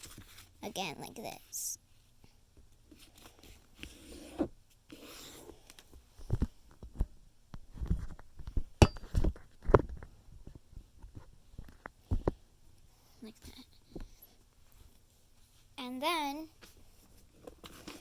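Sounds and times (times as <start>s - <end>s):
paper rustling: 0.0s - 0.6s, 16.6s - 18.0s.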